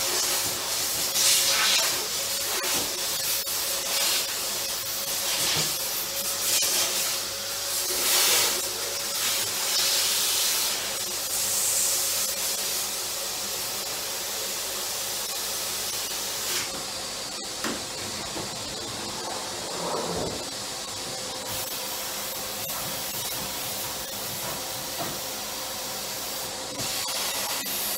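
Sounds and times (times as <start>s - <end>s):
vacuum cleaner running: 0.0s - 27.9s.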